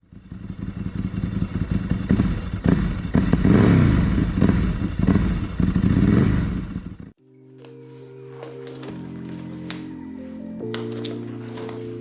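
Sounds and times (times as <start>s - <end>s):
motorcycle engine revving: 0.0s - 7.2s.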